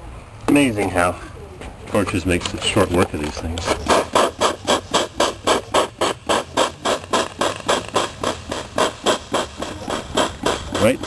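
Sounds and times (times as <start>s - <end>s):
hand tool scraping metal: 2.5s - 11.0s.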